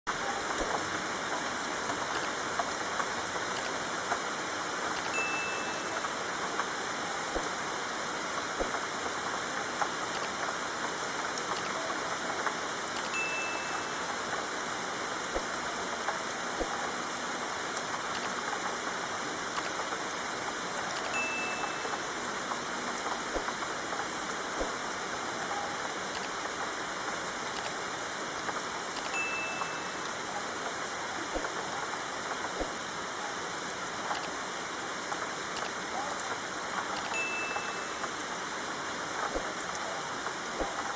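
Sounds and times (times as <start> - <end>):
raindrops tapping: 0.1 - 7.8, 8.4 - 14.6, 15.3 - 17.0, 17.8 - 20.1, 25.8 - 33.0, 34.0 - 36.0, 39.2 - 40.9
steady rain hiss: 0.1 - 40.9
brief high tone: 5.1 - 6.0, 21.1 - 22.0, 29.2 - 30.0, 37.1 - 38.1.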